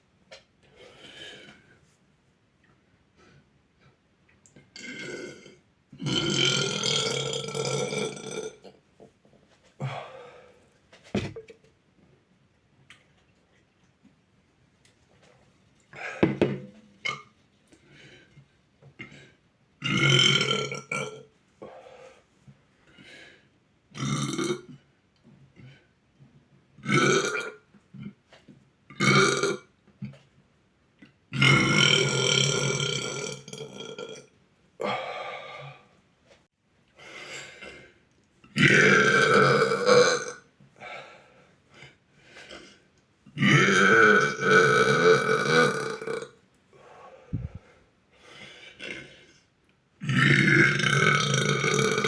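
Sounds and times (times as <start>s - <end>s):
boy burping loudly: 4.8s - 8.6s, 19.8s - 21.2s, 24.0s - 24.6s, 31.4s - 34.2s, 38.6s - 40.4s, 43.4s - 46.3s, 50.0s - 52.0s.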